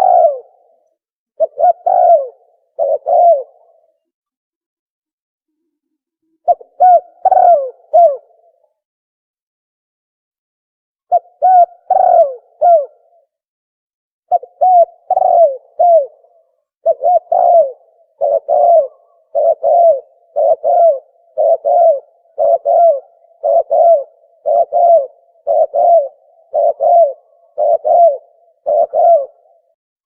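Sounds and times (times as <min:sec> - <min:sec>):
dove cooing: 0:00.0 - 0:00.8, 0:01.4 - 0:04.0, 0:06.4 - 0:08.6, 0:11.1 - 0:13.3, 0:14.3 - 0:29.8.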